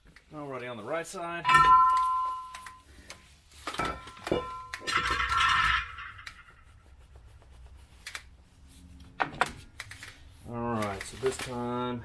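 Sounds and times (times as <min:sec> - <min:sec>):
metal tools clanking: 0:01.5 - 0:02.8, 0:03.7 - 0:06.3
metal scraping rattle: 0:03.6 - 0:06.6.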